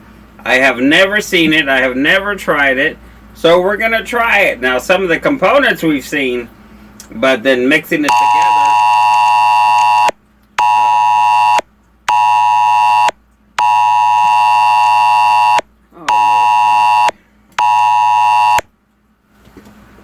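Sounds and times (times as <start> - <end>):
phone alert tone beeping: 8.1 - 18.6.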